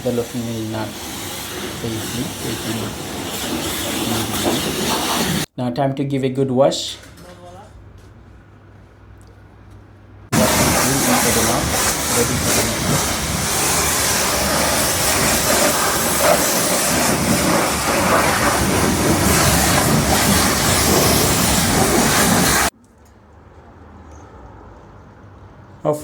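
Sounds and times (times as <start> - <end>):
pressure washer spraying water: 0.0 - 5.5, 10.3 - 22.7.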